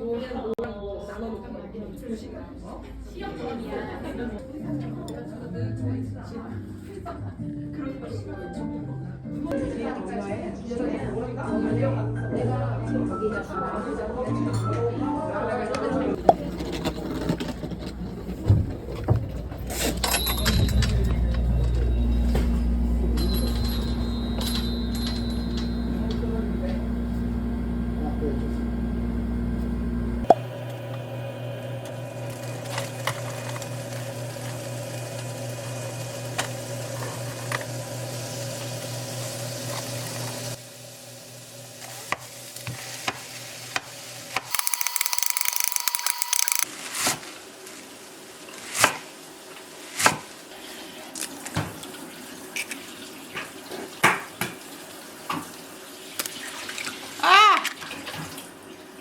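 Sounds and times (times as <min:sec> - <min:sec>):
steady mechanical hum: 0:20.9 - 0:33.6, 0:44.5 - 0:46.6.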